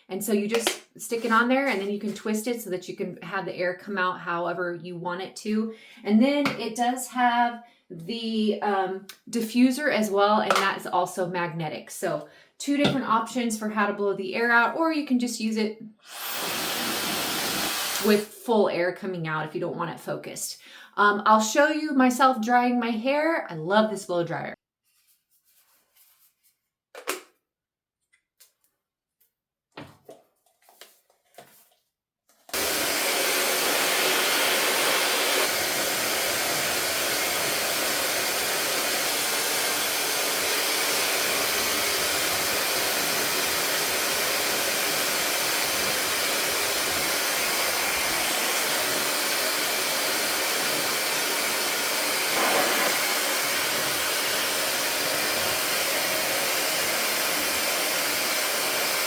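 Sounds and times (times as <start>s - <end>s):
hair dryer blowing: 16.0s - 18.2s, 32.5s - 59.0s.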